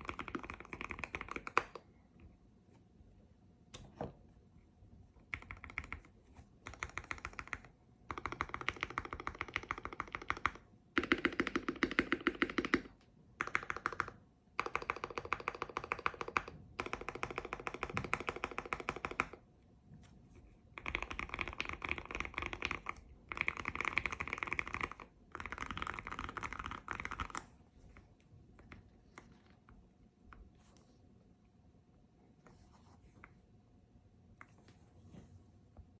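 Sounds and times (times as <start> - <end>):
mechanical keyboard typing: 0.0 - 1.9, 5.3 - 19.4, 20.8 - 27.5.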